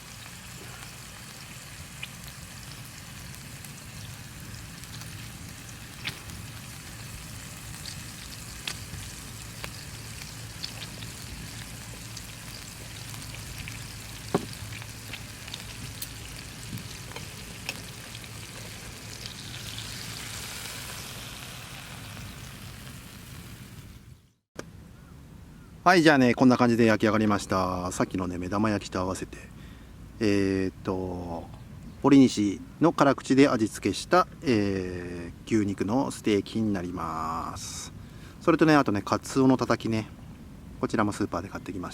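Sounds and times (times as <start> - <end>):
steak sizzling over campfire: 0.0 - 24.2
sharp pops: 6.0 - 6.4, 14.2 - 16.2.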